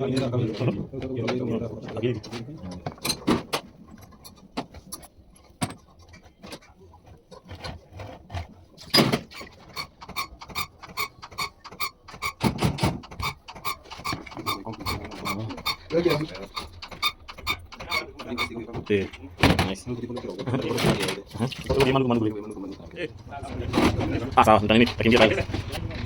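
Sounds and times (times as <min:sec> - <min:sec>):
hand tools knocking on metal: 0:09.0 - 0:21.2.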